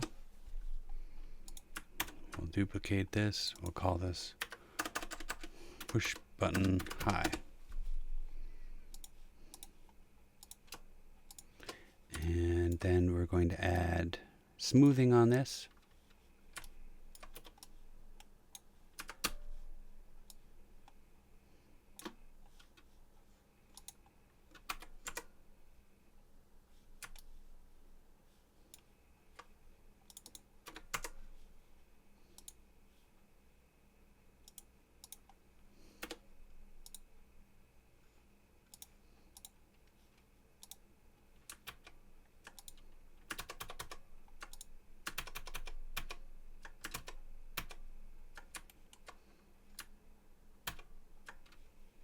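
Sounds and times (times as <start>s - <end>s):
computer keyboard typing: 1.4s - 2.5s, 4.4s - 7.4s, 16.6s - 17.7s, 19.0s - 19.4s, 23.8s - 25.3s, 30.1s - 31.2s, 41.4s - 49.2s, 50.6s - 51.6s.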